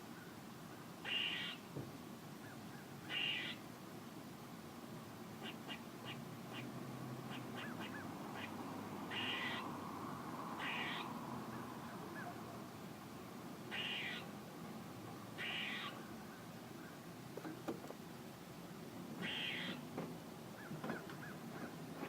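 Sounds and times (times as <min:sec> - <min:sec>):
squirrel chirping: 0:01.0 - 0:01.6, 0:03.1 - 0:03.6, 0:07.3 - 0:09.7, 0:10.6 - 0:11.1, 0:13.7 - 0:14.3, 0:15.4 - 0:16.0, 0:19.2 - 0:19.8
squirrel long calls: 0:01.0 - 0:01.7, 0:02.4 - 0:03.7, 0:05.4 - 0:09.9, 0:10.5 - 0:12.6, 0:13.6 - 0:14.4, 0:15.3 - 0:17.0, 0:19.2 - 0:19.9.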